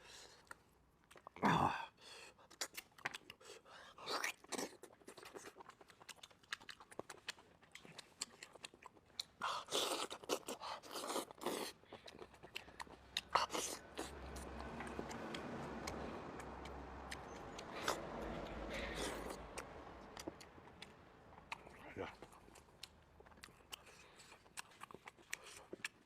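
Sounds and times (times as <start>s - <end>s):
chewing and biting food: 0.1s - 1.4s, 2.3s - 26.0s
low steady hum: 12.6s - 23.8s.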